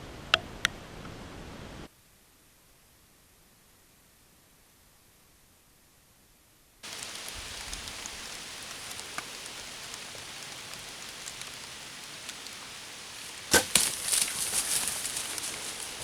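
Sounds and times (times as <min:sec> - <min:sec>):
outdoor hiss: 0:00.0 - 0:16.0
cracks and rustling: 0:06.8 - 0:16.0.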